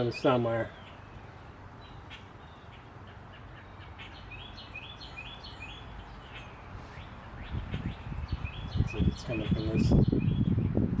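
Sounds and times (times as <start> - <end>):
low background noise: 0.0 - 10.2
songbird chirping: 0.0 - 10.9.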